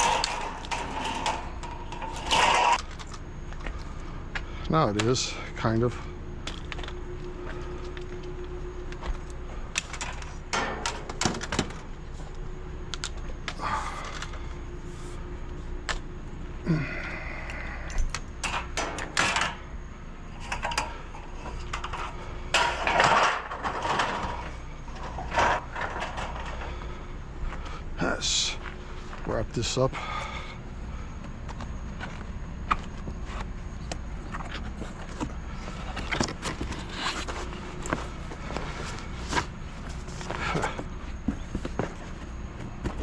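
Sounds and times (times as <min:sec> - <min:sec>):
scrap metal knocks and clanks: 0:00.0 - 0:03.1, 0:09.9 - 0:11.8, 0:20.4 - 0:26.8
scraping and rattling: 0:00.0 - 0:03.2, 0:20.4 - 0:26.8
steady low hum: 0:00.0 - 0:43.0.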